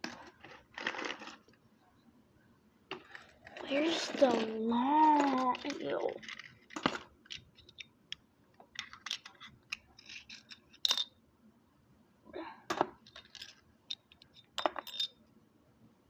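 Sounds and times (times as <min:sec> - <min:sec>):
packaged toys rattling: 0:03.0 - 0:07.1.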